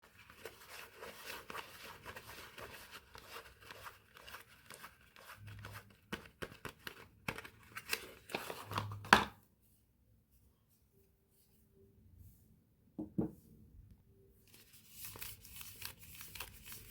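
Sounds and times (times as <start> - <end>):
packaging crinkling and tearing: 14.5 - 16.9.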